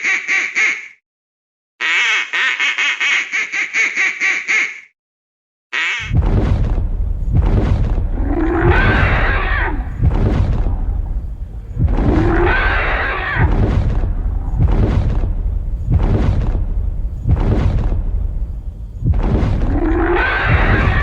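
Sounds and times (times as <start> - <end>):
deep rumble: 6.1 - 21.0
large animal roaring: 8.0 - 15.4, 19.5 - 21.0.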